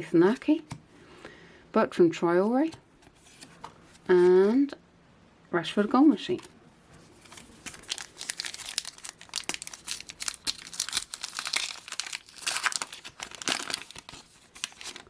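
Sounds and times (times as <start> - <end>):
wrapper crinkling as torn open: 7.3 - 15.0.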